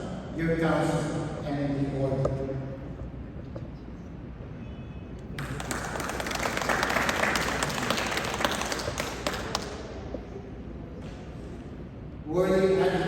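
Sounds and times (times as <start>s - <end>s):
audience applauding: 5.4s - 9.8s.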